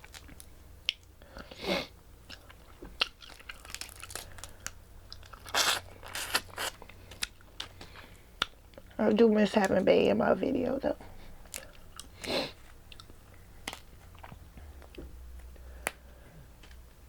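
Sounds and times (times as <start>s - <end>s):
wet chewing and smacking: 2.2s - 8.9s, 11.4s - 16.0s.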